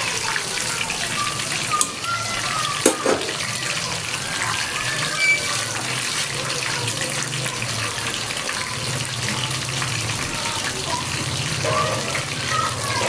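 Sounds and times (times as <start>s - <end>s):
water running from tap: 0.0s - 13.0s
utensils knocking: 2.8s - 3.4s.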